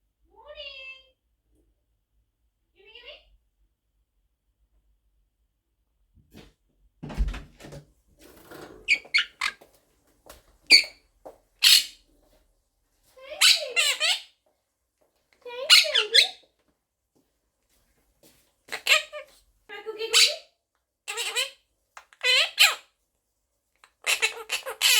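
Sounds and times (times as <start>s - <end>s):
parrot chirping and chattering: 8.9s - 9.6s, 10.7s - 10.9s, 11.6s - 12.0s, 13.4s - 14.3s, 15.7s - 16.4s, 18.7s - 19.2s, 21.1s - 22.9s, 23.8s - 24.9s.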